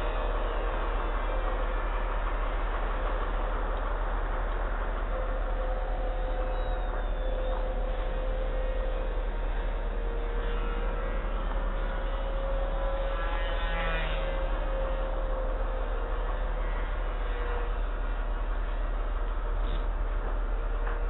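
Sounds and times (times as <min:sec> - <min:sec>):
steady low rumble: 0:00.0 - 0:13.0
model plane propeller whining: 0:00.0 - 0:21.0.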